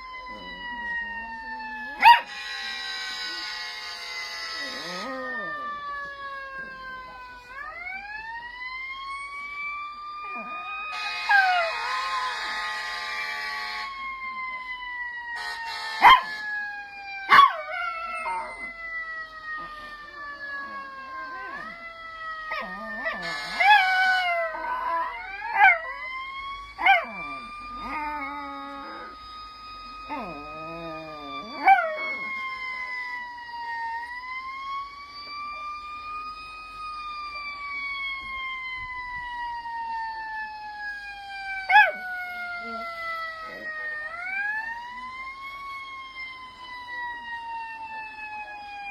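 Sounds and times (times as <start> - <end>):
fire truck siren wailing: 0.0 - 48.9
dog howling and yelping: 4.6 - 5.9, 17.3 - 18.8, 19.6 - 29.2, 30.1 - 32.5.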